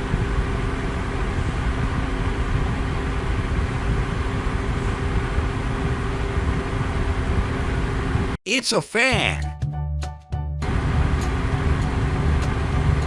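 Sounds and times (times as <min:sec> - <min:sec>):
electric fan running: 0:00.0 - 0:08.3, 0:10.6 - 0:13.0.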